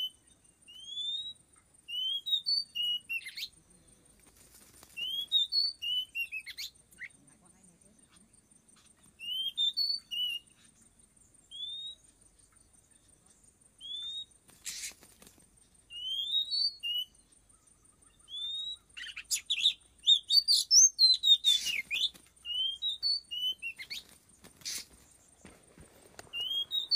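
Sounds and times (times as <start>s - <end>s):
bird whistled notes: 0.0s - 3.5s, 5.0s - 7.2s, 9.2s - 10.7s, 11.5s - 12.1s, 13.8s - 15.0s, 15.9s - 17.3s, 18.1s - 24.9s, 26.3s - 26.9s
bird harsh scratchy rasps: 14.5s - 15.4s, 21.4s - 22.8s, 23.6s - 25.6s.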